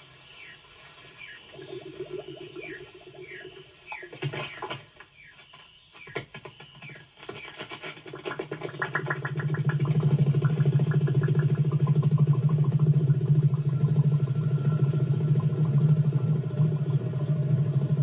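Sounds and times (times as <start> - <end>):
low fast-pulsing buzz: 10.0 - 18.0.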